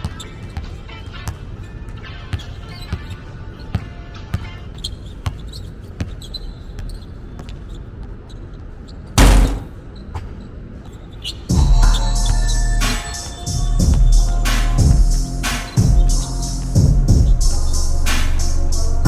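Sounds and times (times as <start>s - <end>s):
background music: 0.0s - 4.8s, 11.5s - 19.0s
basketball bouncing on court floor: 0.0s - 7.7s, 9.2s - 16.2s.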